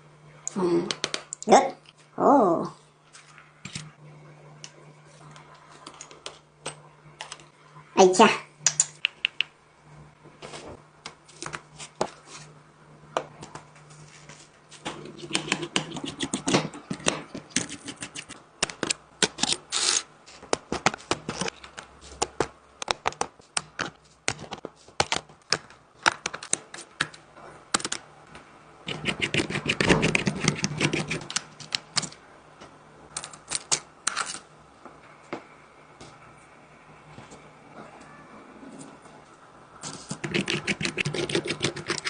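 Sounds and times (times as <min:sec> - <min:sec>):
low steady hum: 0:00.0 - 0:42.0.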